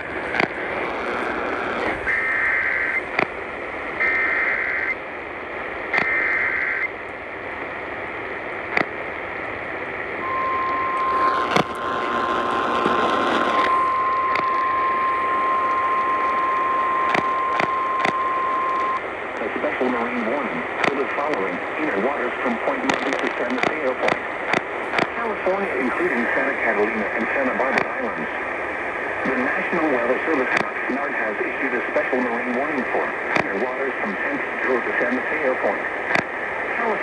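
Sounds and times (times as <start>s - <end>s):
radio static with crackles: 0.0s - 37.0s
warbling data tone bursts: 10.2s - 19.0s.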